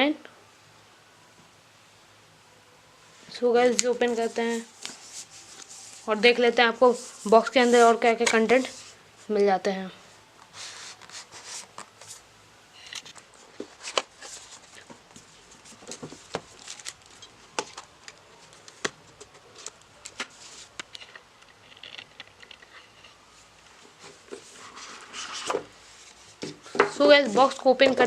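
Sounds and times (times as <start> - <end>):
cardboard rustling: 3.6 - 9.0, 13.1 - 21.1.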